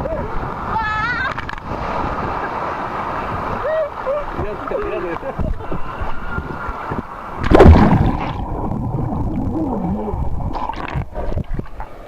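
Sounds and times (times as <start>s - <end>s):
water sloshing and splashing: 3.3s - 12.0s
loud splash: 7.4s - 11.4s.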